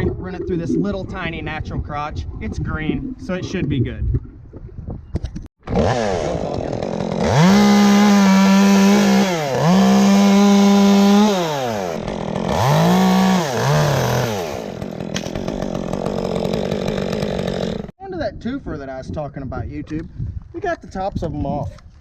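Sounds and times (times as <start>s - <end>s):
chainsaw revving and cutting: 5.6s - 17.9s.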